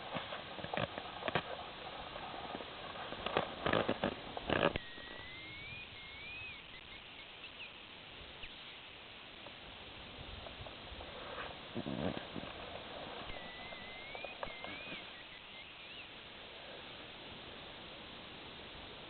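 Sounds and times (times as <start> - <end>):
rustling and cracking: 0.0 - 4.9, 9.4 - 15.3
grouse whistle: 4.7 - 9.0, 13.1 - 16.3.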